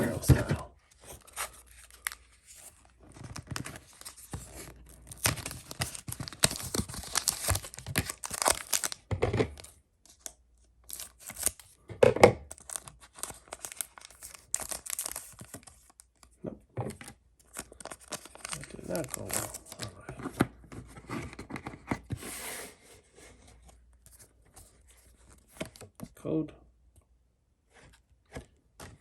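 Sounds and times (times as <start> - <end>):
foil wrapper tearing and crinkling: 3.2 - 9.0, 10.8 - 11.7, 12.5 - 16.0, 17.5 - 20.0.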